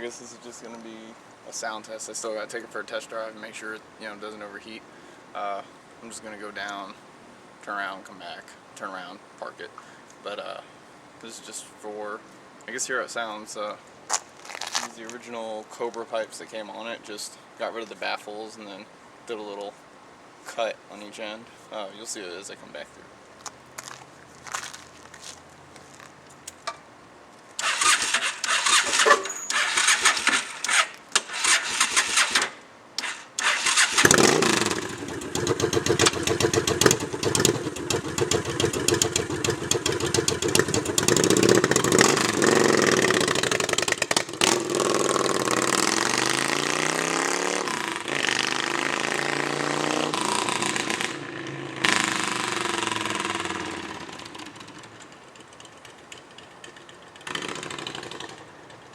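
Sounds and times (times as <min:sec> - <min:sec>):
loud motorcycle engine: 0:27.6 - 0:32.4, 0:33.4 - 0:58.8.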